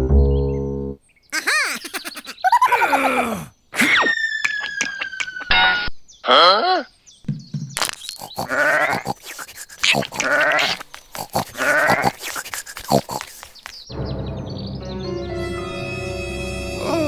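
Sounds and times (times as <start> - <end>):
wavering animal calls: 1.4 - 5.6, 8.1 - 13.9.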